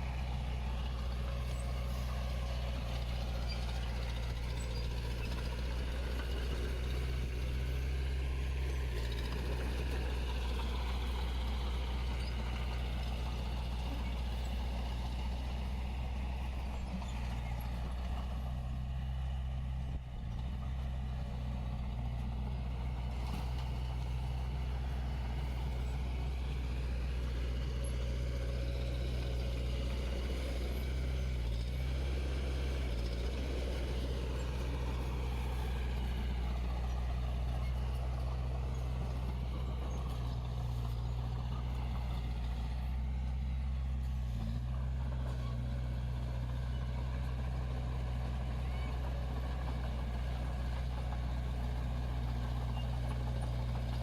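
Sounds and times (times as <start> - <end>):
heavy diesel engine running: 0.0 - 54.0.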